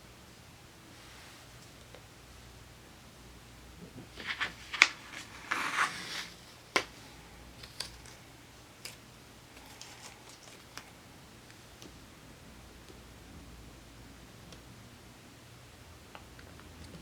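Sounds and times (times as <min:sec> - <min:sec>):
scratchy paper rustle: 0:03.9 - 0:11.0.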